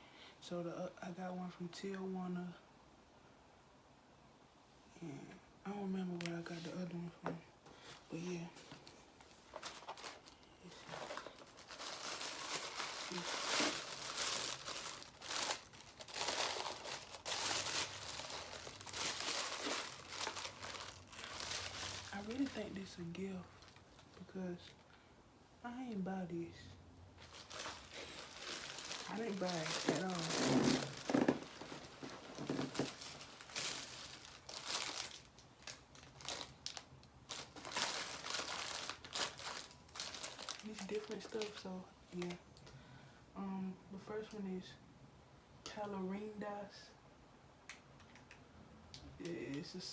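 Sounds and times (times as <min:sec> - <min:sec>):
packaging crinkling and rustling: 0:07.7 - 0:24.8, 0:27.2 - 0:42.4.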